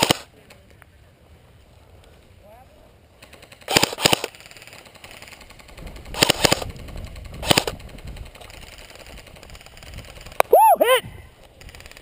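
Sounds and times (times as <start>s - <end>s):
airsoft guns firing bursts: 0.0s - 0.3s, 3.2s - 10.4s.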